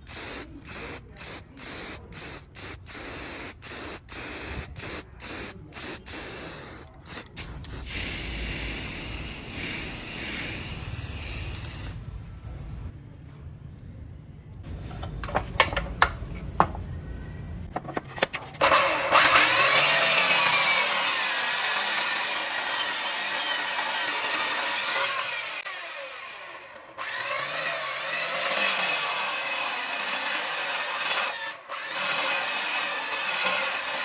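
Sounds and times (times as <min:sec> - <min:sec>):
sharp clicks and knocks: 0:14.7 - 0:16.8
power tool grinding: 0:18.3 - 0:34.0.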